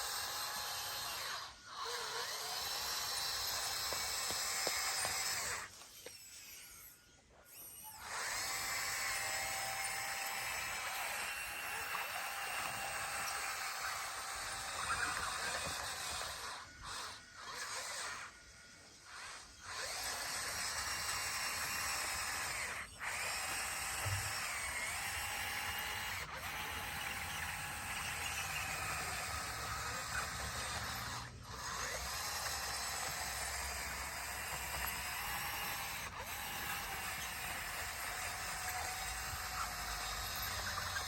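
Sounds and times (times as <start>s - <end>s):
bulldozer running with whine: 7.8s - 41.0s.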